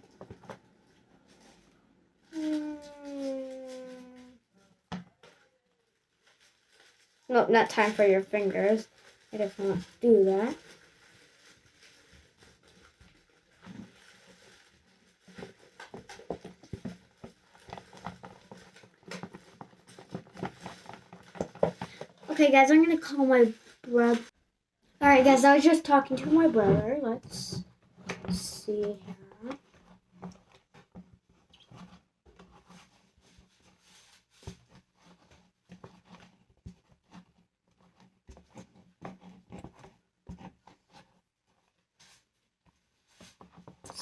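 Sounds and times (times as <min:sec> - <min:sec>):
slime stirred with spoon: 0:25.0 - 0:44.0.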